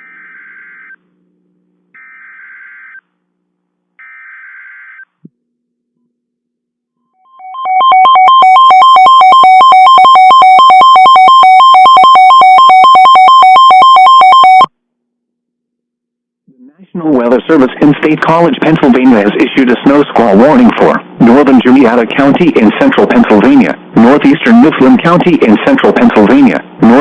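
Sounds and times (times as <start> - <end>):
two-tone alert signal: 7.2 - 14.7.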